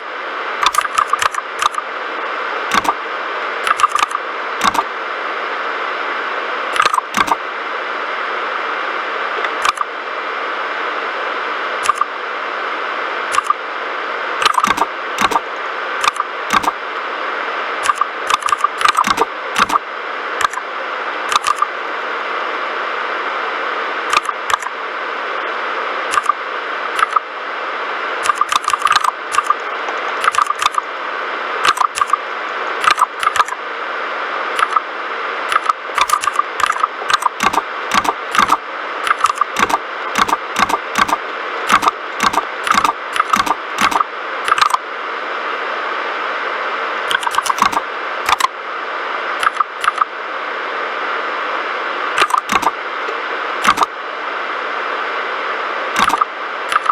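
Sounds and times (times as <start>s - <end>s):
mechanical keyboard typing: 0.6s - 1.8s, 2.7s - 3.0s, 3.7s - 4.8s, 6.8s - 7.4s, 14.4s - 15.4s, 16.0s - 16.8s, 17.8s - 19.8s, 21.3s - 21.7s, 28.2s - 30.8s, 31.6s - 32.2s, 32.8s - 33.6s, 34.6s - 34.8s, 35.5s - 44.8s, 47.1s - 48.5s, 49.4s - 50.1s, 52.2s - 52.7s, 53.6s - 53.9s, 56.0s - 56.9s.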